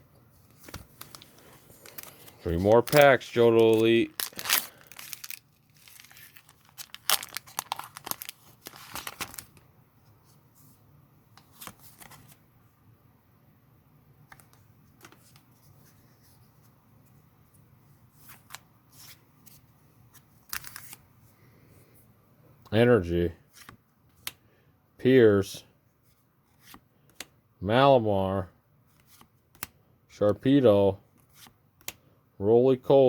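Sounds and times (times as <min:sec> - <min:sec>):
cards rustling and clicking: 0:00.4 - 0:09.6, 0:11.4 - 0:12.4, 0:14.2 - 0:16.7, 0:18.1 - 0:21.0, 0:23.5 - 0:24.4, 0:26.1 - 0:27.4, 0:28.9 - 0:32.1
foil wrapper tearing and crinkling: 0:01.0 - 0:09.5.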